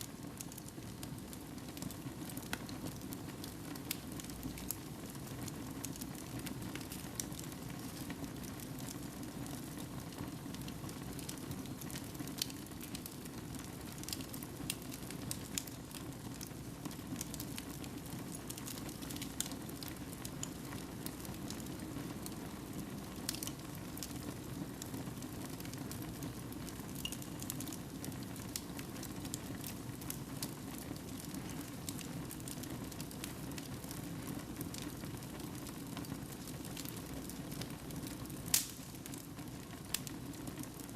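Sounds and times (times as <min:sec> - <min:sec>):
fire crackling in a fireplace: 0:00.0 - 0:40.9.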